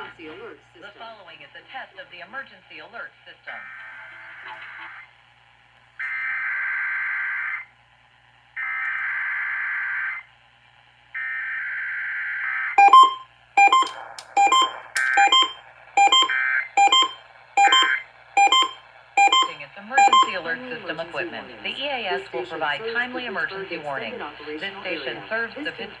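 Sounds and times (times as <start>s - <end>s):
short sharp beeps: 12.8s - 20.4s.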